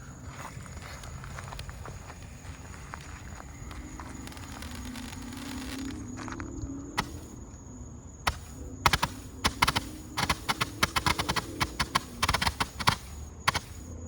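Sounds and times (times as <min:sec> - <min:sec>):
firework fountain crackling: 0:03.6 - 0:06.0, 0:07.0 - 0:07.4, 0:08.3 - 0:13.9.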